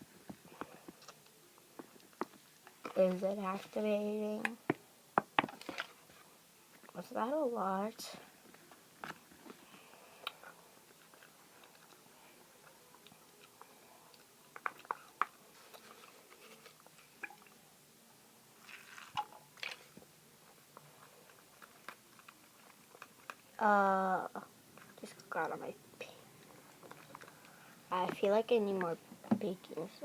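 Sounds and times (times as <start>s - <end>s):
slime being stirred squelching: 18.6s - 20.0s.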